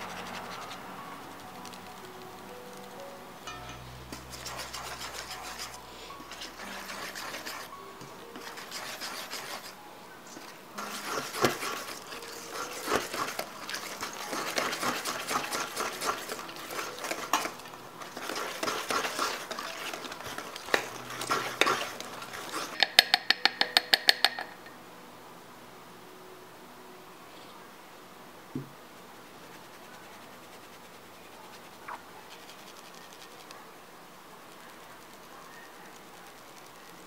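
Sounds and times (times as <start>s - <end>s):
metal utensil scraping in bowl: 3.4s - 7.7s, 8.3s - 24.7s
ringing taps on bowl rim: 22.8s - 24.7s.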